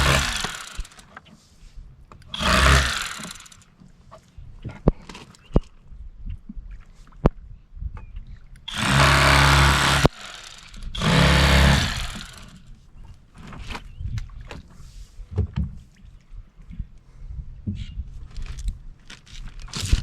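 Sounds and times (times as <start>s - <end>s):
electric knife buzzing: 0.0s - 1.0s, 2.3s - 3.6s, 8.7s - 12.6s.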